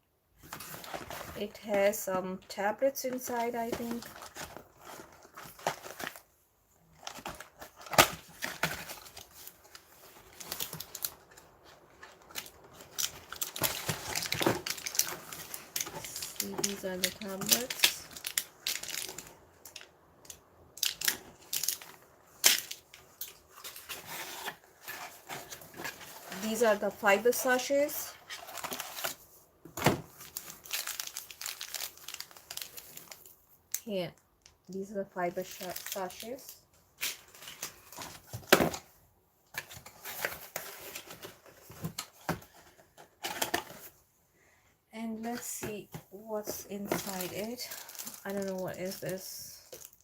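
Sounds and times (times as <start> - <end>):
packets tapping and rustling: 3.2 - 6.2, 7.0 - 19.8, 45.4 - 50.0
packaging crinkling: 7.0 - 19.9, 20.8 - 27.0, 30.0 - 33.4, 35.4 - 38.8, 46.8 - 50.0.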